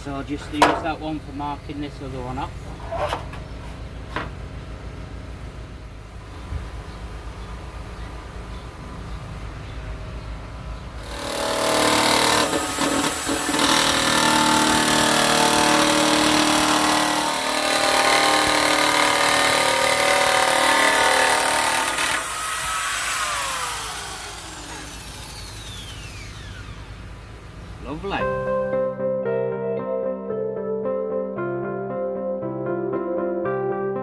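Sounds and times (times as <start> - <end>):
electric nibbler cutting metal sheet: 11.0 - 27.0.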